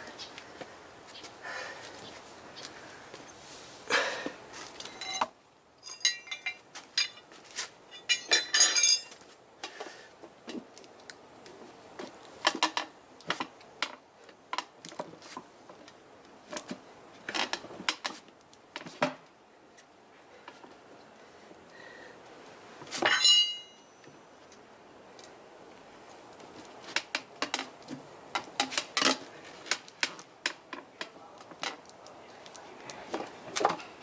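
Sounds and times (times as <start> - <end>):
metal hand tools clinking: 4.8 - 7.3, 7.9 - 9.2, 23.0 - 23.9.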